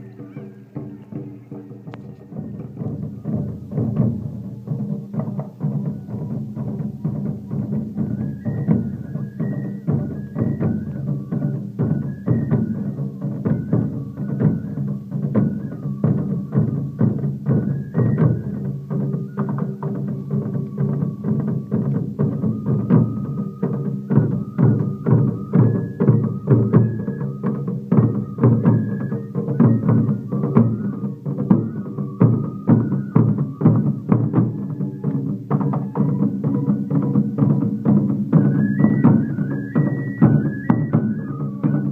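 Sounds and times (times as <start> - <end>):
high melody line: 0.0 - 3.8
drums in repeating rhythm: 0.0 - 41.9.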